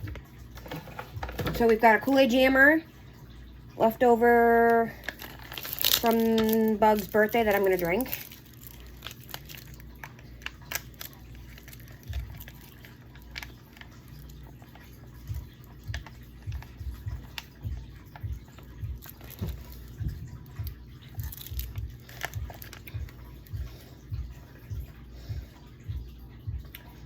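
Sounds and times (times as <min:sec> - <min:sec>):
plastic pouch crinkling: 0:05.0 - 0:23.5
soft gulps: 0:08.2 - 0:27.0.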